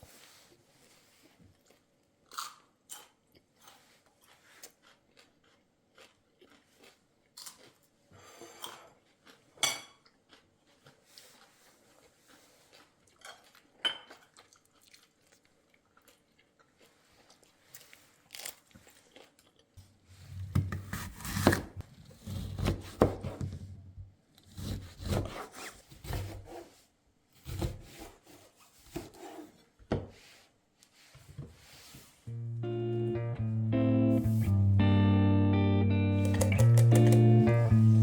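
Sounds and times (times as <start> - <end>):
knife sawing on wooden board: 24.5 - 26.7, 27.4 - 29.6.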